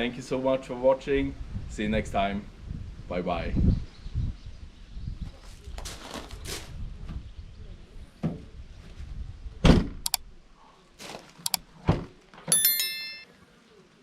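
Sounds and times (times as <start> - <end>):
ringing multi-tone chime: 12.5 - 13.4.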